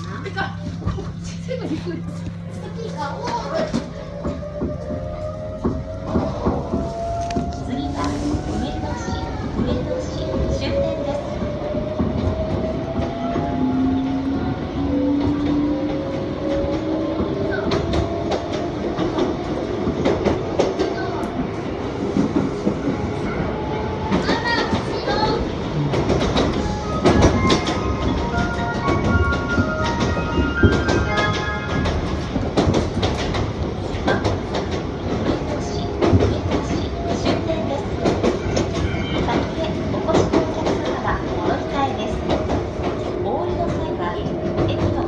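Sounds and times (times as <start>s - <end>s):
clicks and clatter of train car: 0.0s - 14.4s, 15.2s - 23.3s, 24.0s - 45.0s
train wheels rumbling on rail: 0.0s - 45.0s
wheels clacking over rail joints: 24.0s - 45.0s.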